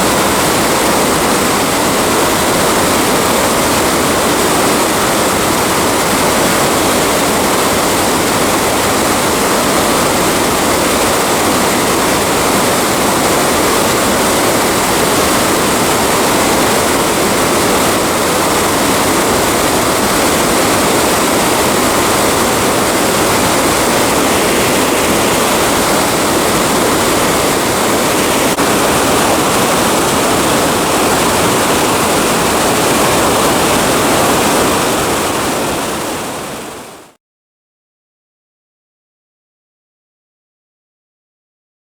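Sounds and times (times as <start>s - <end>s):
waterfall rushing: 0.0s - 37.2s.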